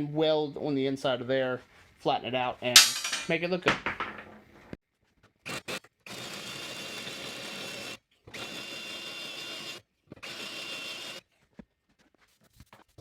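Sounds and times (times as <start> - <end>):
electric drill drilling into steel: 6.1 - 11.2.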